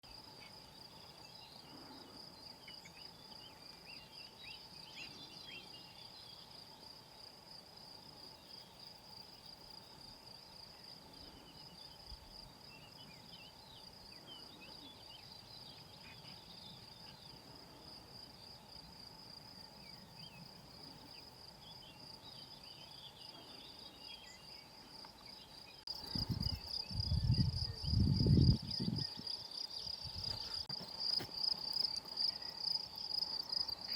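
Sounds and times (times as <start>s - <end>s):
insects stridulating: 0.1s - 33.9s
faint bird chirps: 10.5s - 18.7s.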